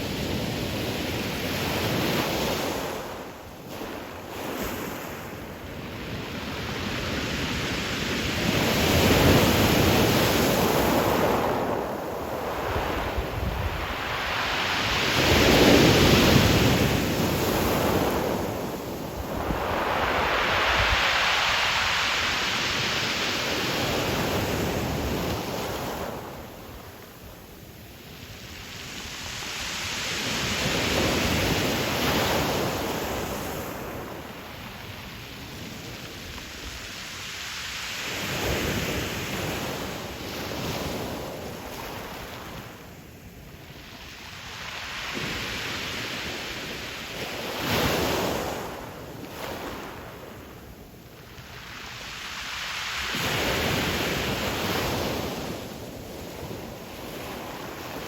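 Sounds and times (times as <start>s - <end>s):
wash of surf: 6.4s - 26.5s, 51.3s - 58.0s.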